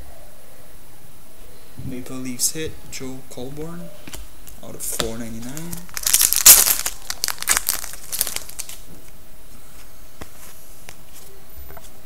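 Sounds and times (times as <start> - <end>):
plastic wrapper crinkling: 4.1 - 9.0.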